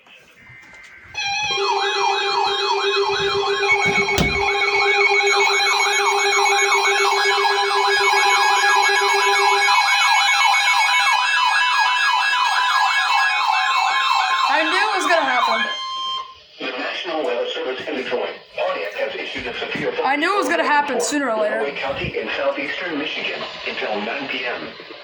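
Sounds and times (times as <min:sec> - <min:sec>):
steady warning tones: 0:00.0 - 0:25.0
rising and falling siren whoop: 0:01.2 - 0:16.3.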